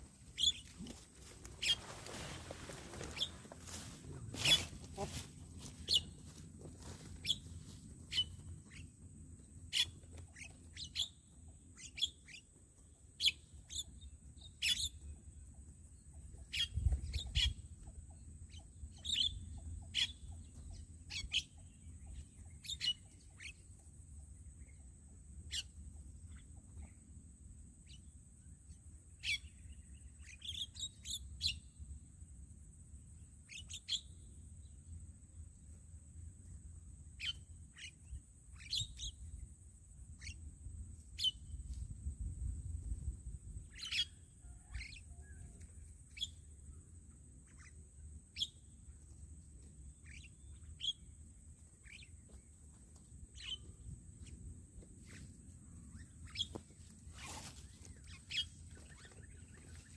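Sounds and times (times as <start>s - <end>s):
birds chirping: 0.3s - 9.0s, 50.0s - 51.2s, 53.3s - 54.4s, 55.1s - 59.9s.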